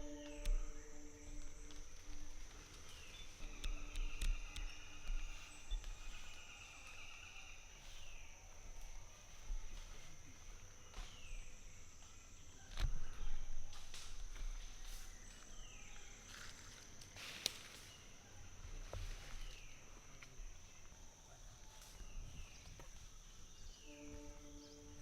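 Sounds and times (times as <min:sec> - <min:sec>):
high-pitched insect drone: 0:00.0 - 0:08.0, 0:23.7 - 0:25.0.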